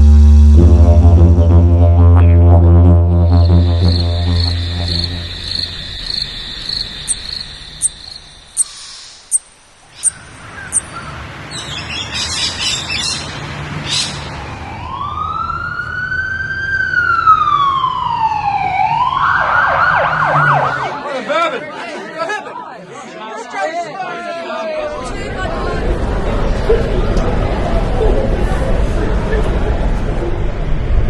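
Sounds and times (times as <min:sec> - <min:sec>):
high repeating chirp: 0:03.2 - 0:08.7
bird-like chirps: 0:03.7 - 0:14.3
emergency vehicle siren wailing: 0:14.2 - 0:21.1.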